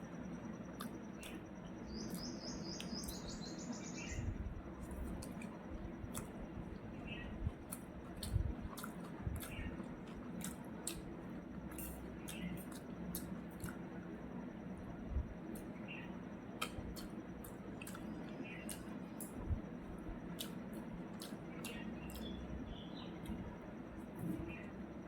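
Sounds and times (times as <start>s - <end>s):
crunchy chewing: 0.7s - 3.5s, 4.8s - 14.2s, 15.5s - 24.7s
bird chirping: 1.2s - 4.4s, 21.2s - 23.3s.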